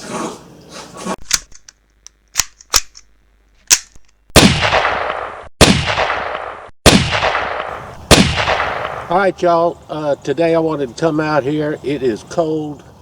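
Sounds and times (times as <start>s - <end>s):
pistol shots: 4.4s - 9.1s.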